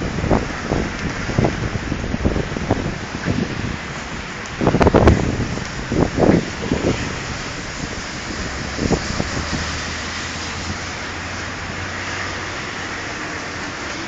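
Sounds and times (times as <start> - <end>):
gusty thumps: 0.0 - 11.2
storm wind and rain rushing: 0.0 - 14.0.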